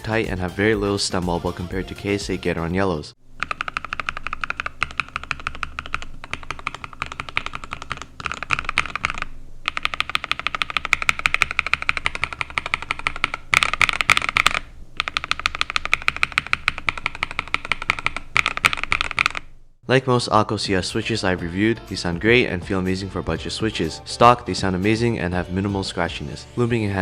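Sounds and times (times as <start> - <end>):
mechanical keyboard typing: 3.4 - 19.5.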